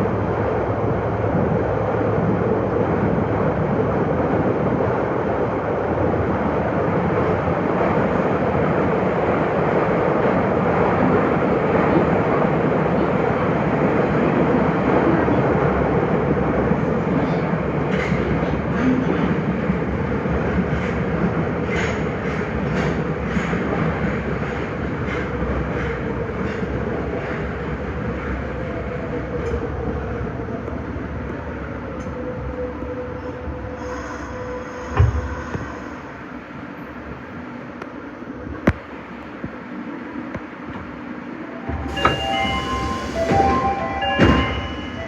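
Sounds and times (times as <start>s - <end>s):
train wheels rumbling on rail: 0.0s - 45.0s
train whining tone: 41.4s - 45.0s
rail-joint clicks: 41.7s - 45.0s.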